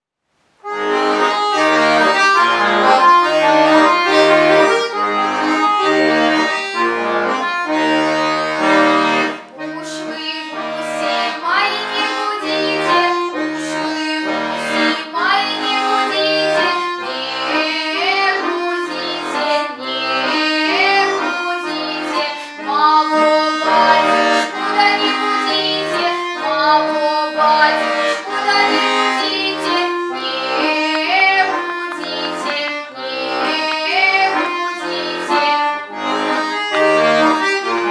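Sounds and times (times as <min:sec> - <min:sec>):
accordion playing: 0:00.6 - 0:37.9
girl singing folk song: 0:09.3 - 0:36.6.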